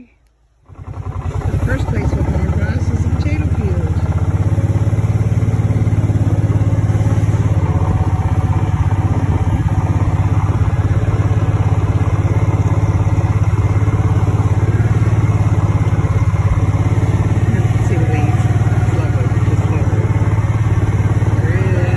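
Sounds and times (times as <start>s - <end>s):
small engine low putter: 0.2s - 21.9s.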